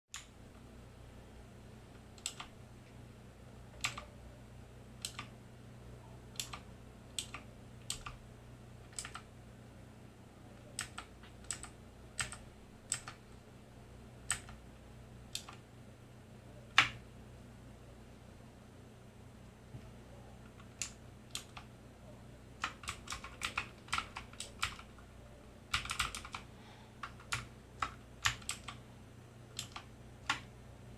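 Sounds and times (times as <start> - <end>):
mechanical keyboard key clicks: 6.4 - 6.6.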